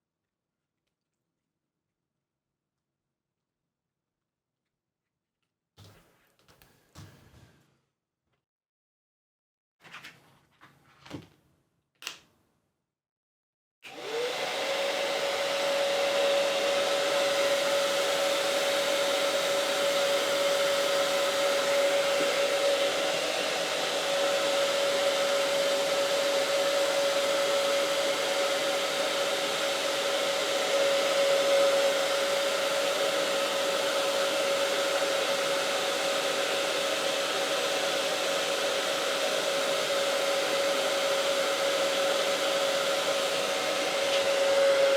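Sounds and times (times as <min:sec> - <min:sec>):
hair dryer running: 0:13.8 - 0:44.9.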